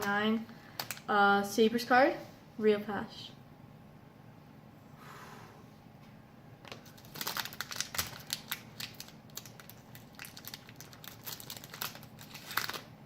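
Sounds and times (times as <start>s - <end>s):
cards and packaging crinkling: 0.0s - 1.1s, 6.7s - 12.9s.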